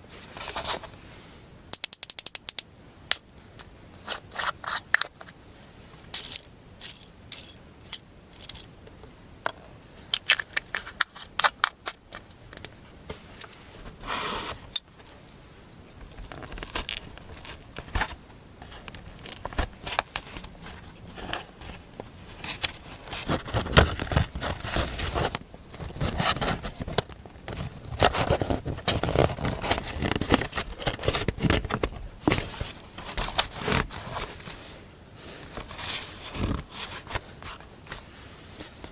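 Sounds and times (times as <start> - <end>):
paper rustling and scraping: 16.0 - 38.9.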